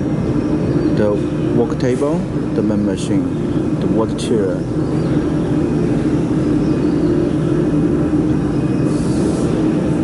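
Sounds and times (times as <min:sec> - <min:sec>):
machinery droning: 0:00.0 - 0:10.0.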